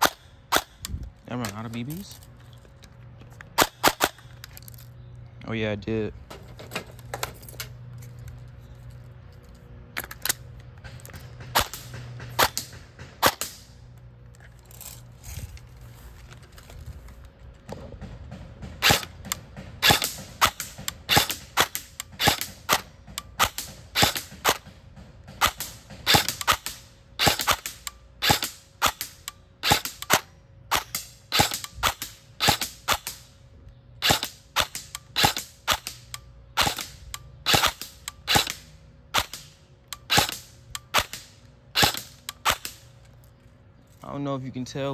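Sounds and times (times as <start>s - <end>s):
airsoft rifle firing: 18.8s - 33.4s, 34.0s - 42.9s.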